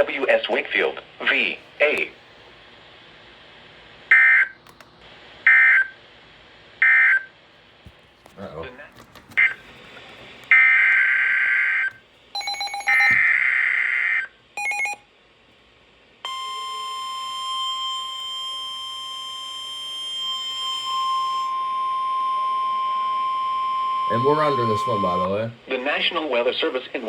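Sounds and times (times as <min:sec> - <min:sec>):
steady alarm tone: 0:14.6 - 0:15.0, 0:16.3 - 0:25.5
harsh buzzing data bursts: 0:20.5 - 0:25.5.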